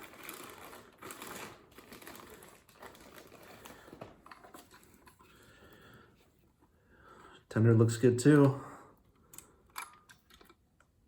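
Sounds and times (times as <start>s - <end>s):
packaging rustling and clicking: 0.0s - 5.2s.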